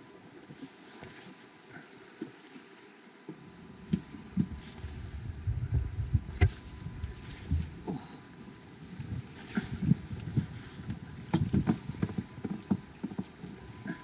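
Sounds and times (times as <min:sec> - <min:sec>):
wind buffeting microphone: 0:03.7 - 0:07.9, 0:08.8 - 0:14.0.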